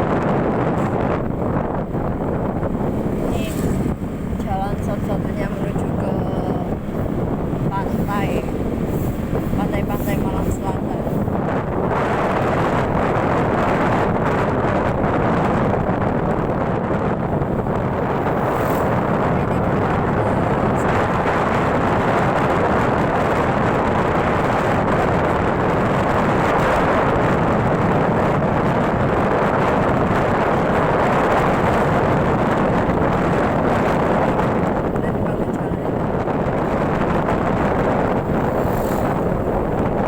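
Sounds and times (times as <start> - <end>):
moving motorcycle running: 0.0 - 40.0
wind rush on microphone: 0.0 - 40.0.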